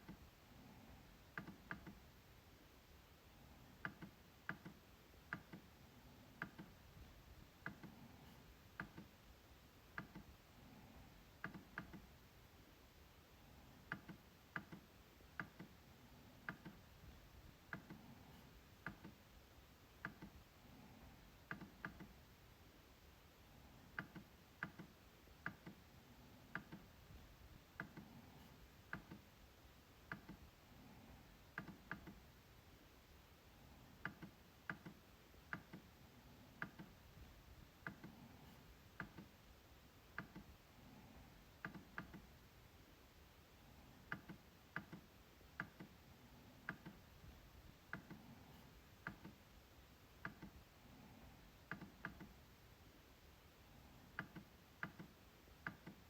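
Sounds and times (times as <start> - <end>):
trackpad clicks: 1.4 - 2.0, 3.8 - 5.7, 6.4 - 6.8, 11.4 - 12.1, 16.4 - 16.9, 21.5 - 22.2, 24.0 - 25.8, 26.5 - 26.9, 27.8 - 29.3, 30.1 - 30.5, 31.5 - 32.2, 34.0 - 35.9, 40.1 - 40.5, 44.1 - 46.0, 46.6 - 47.1, 50.2 - 50.6, 54.2 - 56.0.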